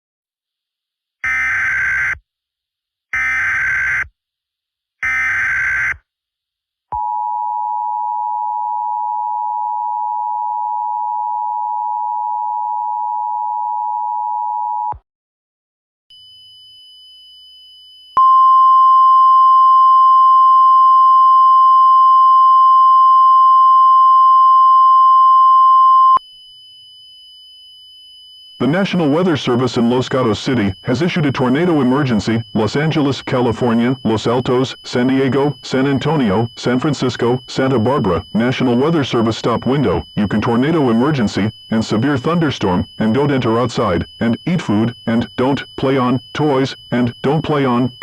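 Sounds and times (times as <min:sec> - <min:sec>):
data burst: 0:28.5 - 0:48.0
two-tone attention signal: 0:28.5 - 0:48.0
weather radio alert tone: 0:28.6 - 0:48.0.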